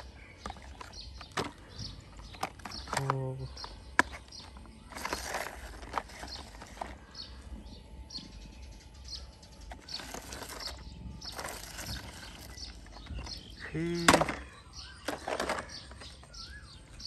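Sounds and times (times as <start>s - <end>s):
high bird chirps: 0.0s - 17.0s
rustling: 0.4s - 7.5s.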